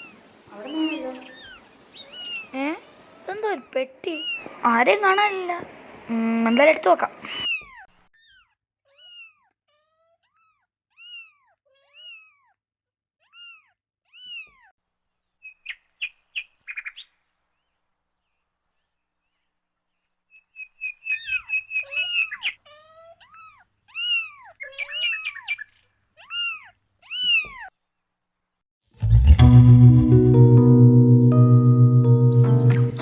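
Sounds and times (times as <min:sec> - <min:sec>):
kitten chirps: 0:00.0 - 0:04.6, 0:07.2 - 0:12.6, 0:13.2 - 0:14.7, 0:21.0 - 0:27.7
kittens mewing: 0:00.0 - 0:05.5, 0:06.5 - 0:12.6, 0:13.2 - 0:14.7, 0:21.1 - 0:25.5, 0:26.2 - 0:27.7.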